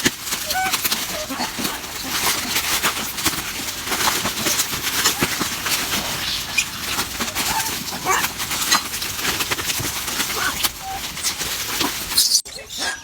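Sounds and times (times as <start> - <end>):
monkeys rustling and scrabbling: 0.0 - 13.0
monkey high calls: 0.3 - 2.8, 5.0 - 9.0, 10.1 - 13.0.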